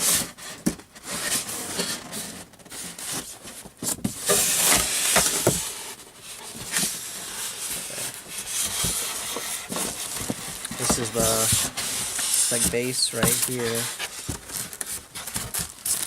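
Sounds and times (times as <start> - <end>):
styrofoam and plastic rustling: 0.0 - 16.0.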